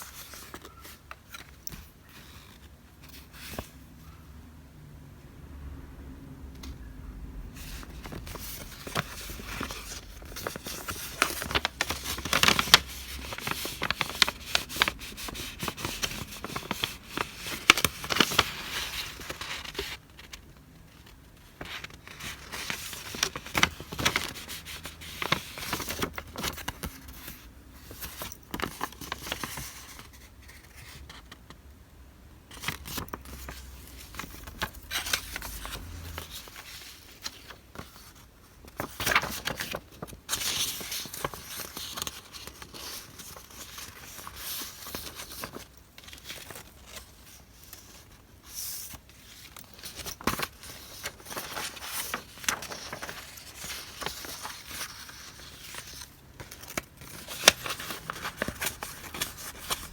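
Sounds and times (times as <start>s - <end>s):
plastic wrapping crinkling: 49.5s - 59.9s.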